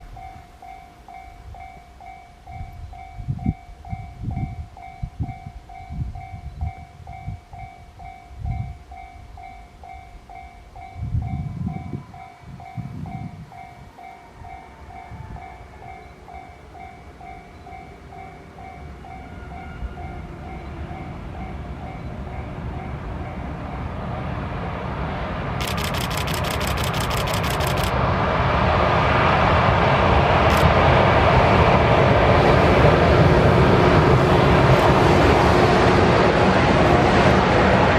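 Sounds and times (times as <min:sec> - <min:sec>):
level-crossing bell ringing: 0:00.0 - 0:24.1
freight train rumble: 0:00.0 - 0:37.9.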